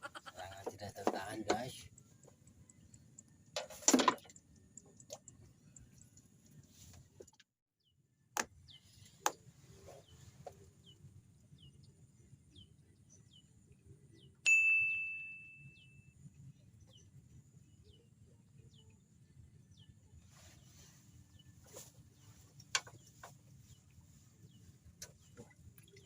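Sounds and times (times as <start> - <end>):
bell-like ding: 14.5 - 16.1.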